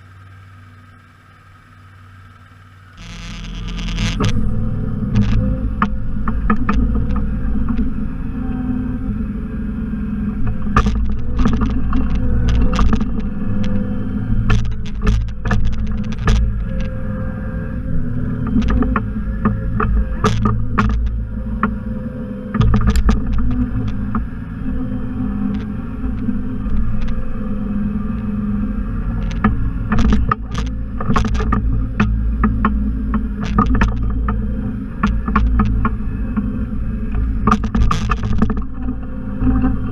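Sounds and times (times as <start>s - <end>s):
tractor engine running: 0.0s - 39.9s
sharp clanks and knocks: 10.4s - 17.3s, 18.4s - 21.8s, 29.2s - 36.5s, 37.1s - 39.8s.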